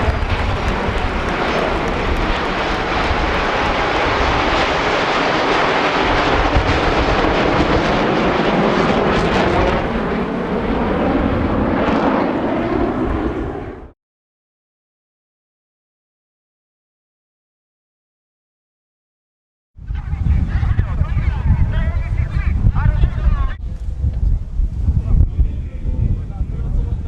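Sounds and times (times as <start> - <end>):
jet aircraft roaring overhead: 0.0 - 14.0, 19.8 - 27.0.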